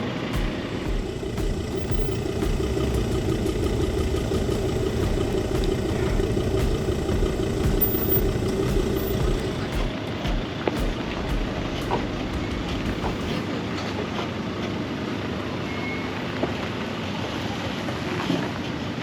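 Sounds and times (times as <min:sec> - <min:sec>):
vehicle engine droning: 0:00.0 - 0:13.5.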